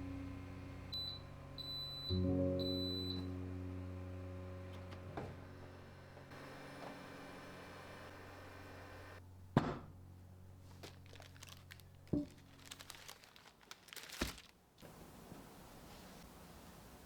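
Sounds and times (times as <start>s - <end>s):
small crinkling clicks: 10.6s - 16.2s.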